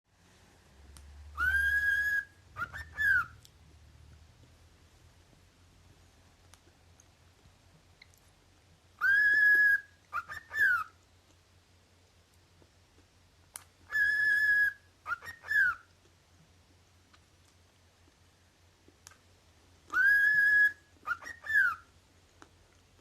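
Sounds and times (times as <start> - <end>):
cockatiel whistling: 1.3 - 3.4, 9.0 - 11.0, 13.9 - 15.9, 19.9 - 21.9.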